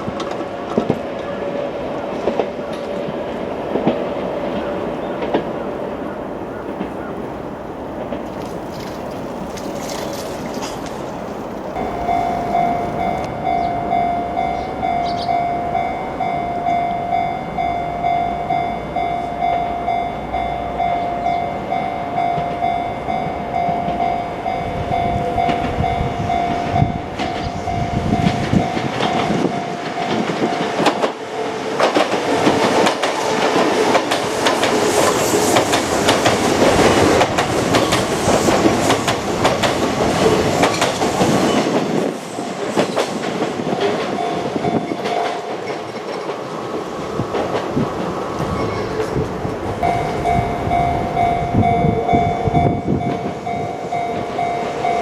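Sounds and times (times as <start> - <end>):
electric train passing: 0.0 - 55.0
wheels clattering over rail joints: 2.1 - 13.7, 24.9 - 55.0
level-crossing alarm bell: 11.7 - 31.7, 43.9 - 46.0, 49.8 - 55.0.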